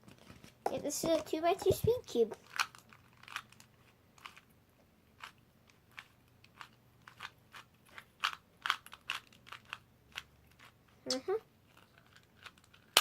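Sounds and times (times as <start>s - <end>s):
plastic clicks of speed cube turning: 2.4s - 4.4s, 5.2s - 10.7s, 11.7s - 13.0s.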